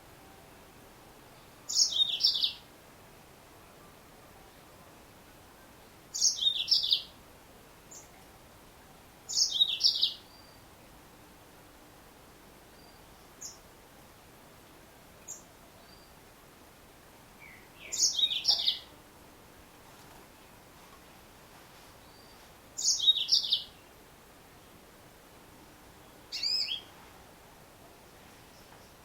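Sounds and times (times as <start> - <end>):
canary chirping: 26.3 - 26.9.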